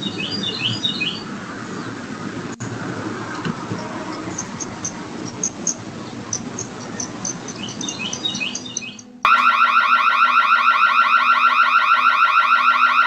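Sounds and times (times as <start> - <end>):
bird chirps: 0.0 - 1.3, 5.3 - 9.2
faint outdoor hiss: 0.0 - 9.4
warbling security siren: 8.4 - 13.0.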